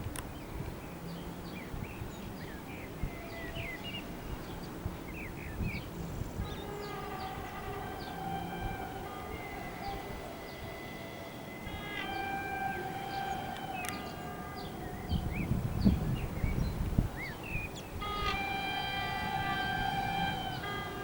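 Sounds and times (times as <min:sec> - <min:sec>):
birds chirping: 0:00.4 - 0:21.0
electric locomotive tone: 0:05.8 - 0:21.0.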